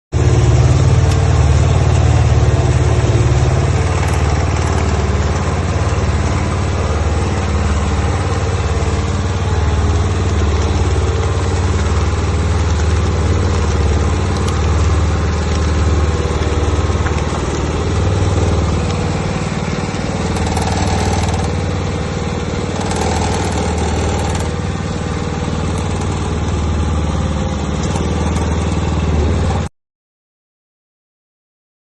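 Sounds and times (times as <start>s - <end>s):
concrete mixer engine humming: 0.1s - 29.7s.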